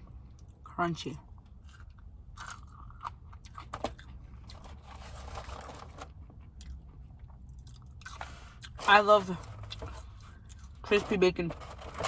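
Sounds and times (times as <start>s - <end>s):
person chewing crunchy food: 1.4s - 8.8s, 9.6s - 10.8s.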